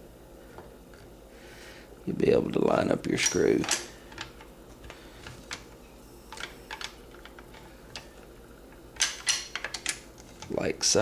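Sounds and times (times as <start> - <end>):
metal parts clicking and tapping: 3.0 - 10.6.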